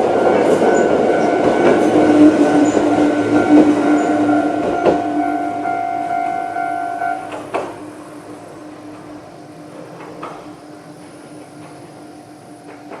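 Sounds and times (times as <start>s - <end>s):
level crossing warning bell: 0.0s - 9.9s.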